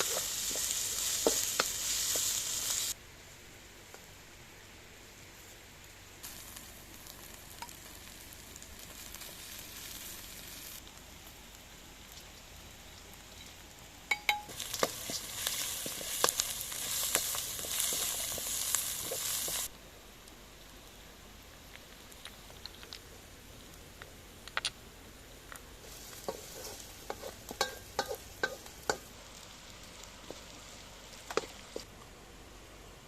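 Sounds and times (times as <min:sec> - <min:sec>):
food sizzling in hot fat: 0:00.0 - 0:03.0, 0:05.8 - 0:19.7, 0:25.5 - 0:32.0.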